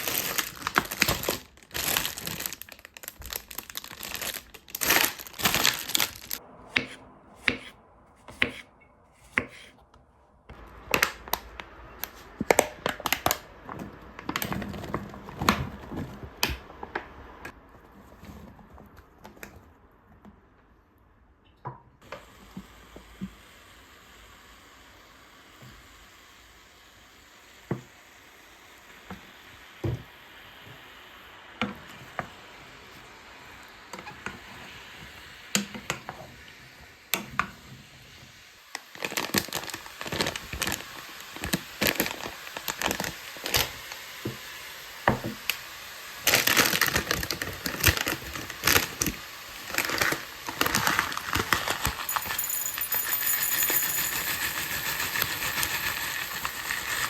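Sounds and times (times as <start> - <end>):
food sizzling in a pot: 0.0 - 6.4, 22.0 - 57.0
utensils clinking: 51.8 - 56.9.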